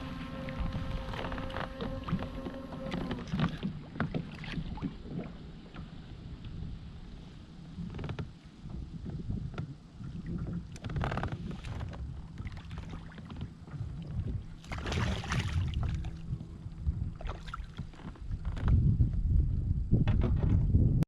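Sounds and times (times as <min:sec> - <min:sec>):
constant low rumble: 0:00.0 - 0:21.0
knocks and handling on kayak: 0:00.2 - 0:05.9, 0:07.8 - 0:19.4, 0:20.0 - 0:20.8
rushing splash: 0:14.6 - 0:16.1.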